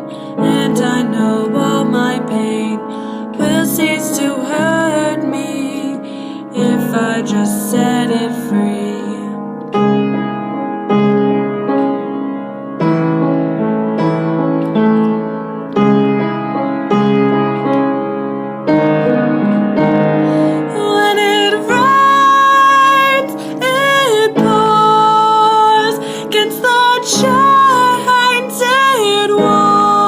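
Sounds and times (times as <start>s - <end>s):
woman singing: 0.0s - 9.5s, 20.4s - 30.0s
piano chords: 0.0s - 30.0s.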